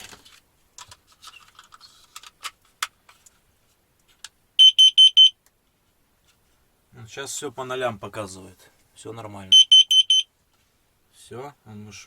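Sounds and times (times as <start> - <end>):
loud high detector beeps: 4.6 - 5.4, 9.5 - 10.3.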